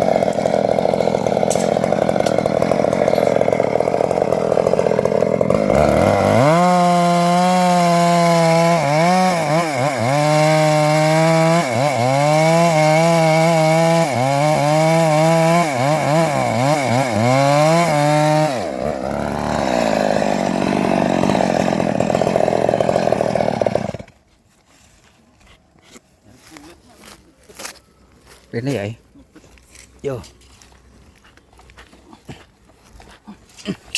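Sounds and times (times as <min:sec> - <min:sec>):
chainsaw cutting wood: 0:00.0 - 0:24.2.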